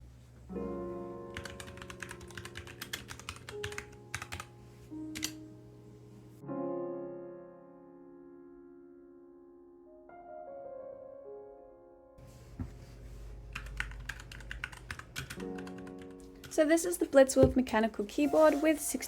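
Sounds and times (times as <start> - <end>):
soft piano music: 0.0 - 19.0
mechanical keyboard typing: 1.3 - 4.5, 5.2 - 5.4, 13.5 - 16.6.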